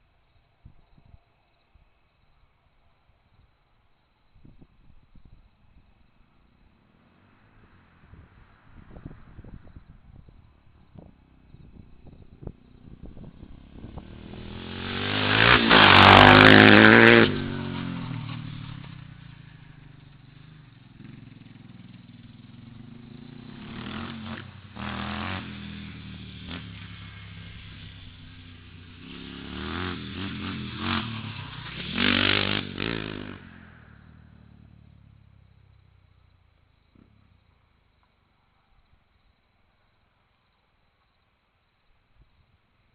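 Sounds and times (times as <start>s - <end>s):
quad engine revving: 12.4s - 36.2s.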